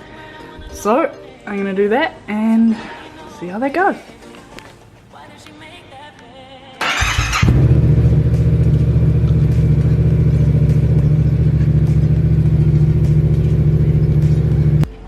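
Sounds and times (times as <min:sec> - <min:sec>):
starter motor cranking: 0:06.8 - 0:10.4
motorcycle engine idling: 0:06.8 - 0:14.9.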